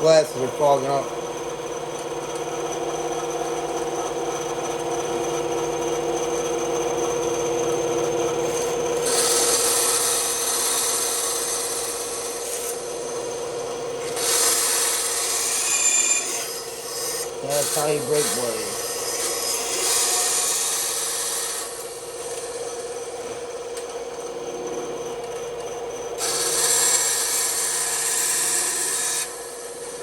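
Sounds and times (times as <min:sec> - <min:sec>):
bandsaw cutting wood: 0:00.0 - 0:01.1, 0:08.4 - 0:13.2, 0:13.9 - 0:22.8, 0:26.2 - 0:30.0.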